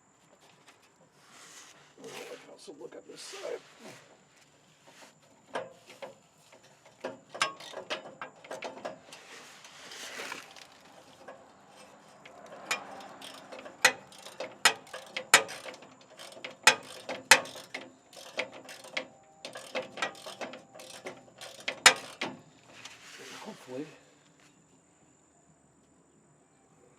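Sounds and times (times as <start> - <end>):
metal tools clinking: 5.4 - 9.3, 10.2 - 22.9
ratchet wrench clicking: 6.6 - 9.0, 11.0 - 22.5
scraping rush: 9.1 - 15.8.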